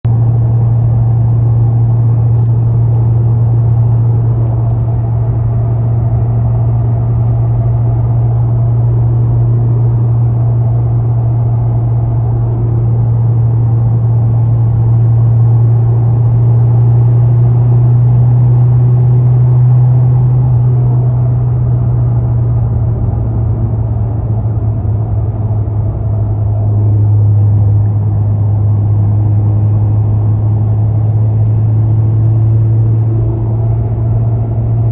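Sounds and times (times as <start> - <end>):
car interior drone: 0.0 - 34.9.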